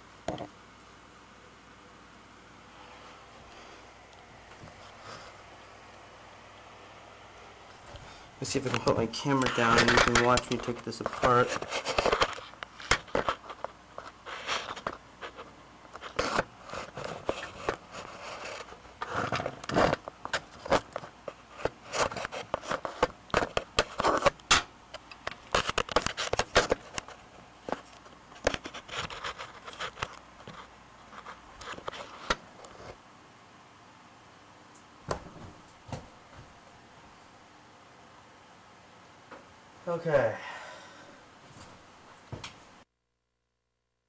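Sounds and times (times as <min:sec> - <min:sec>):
parts clicking and scraping: 0:08.5 - 0:33.0.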